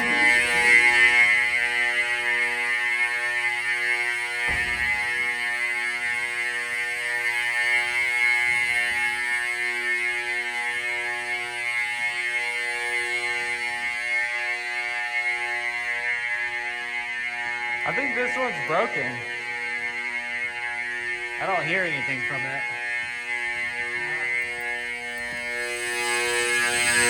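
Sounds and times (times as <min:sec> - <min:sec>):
fire alarm horns buzzing: 0:00.0 - 0:27.0
sharp knock: 0:04.5 - 0:05.2.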